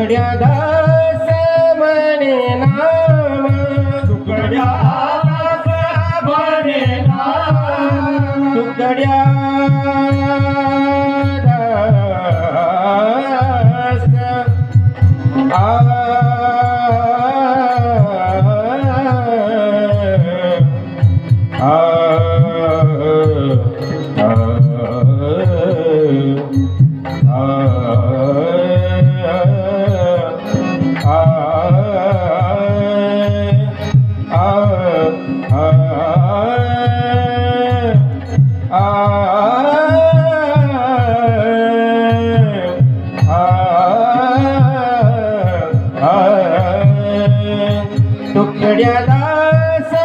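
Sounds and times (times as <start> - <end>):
pakhvaj drum strokes: 0.0 - 50.0.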